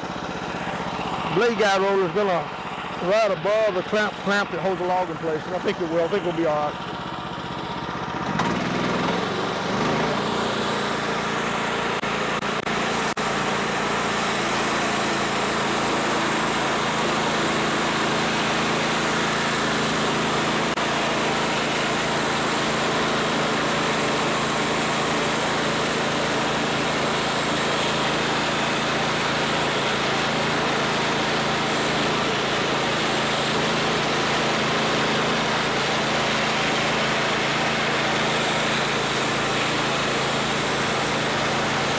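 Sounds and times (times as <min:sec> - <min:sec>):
small engine running: 0:00.0 - 0:41.9
band saw blade whining in wood: 0:08.1 - 0:16.4.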